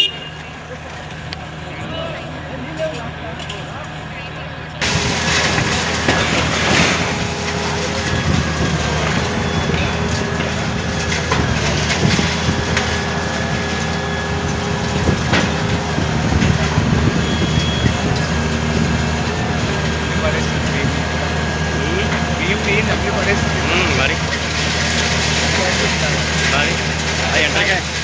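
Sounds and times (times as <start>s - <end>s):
demolition machine engine running: 0.0s - 28.0s
building knocks and cracks: 4.8s - 19.3s.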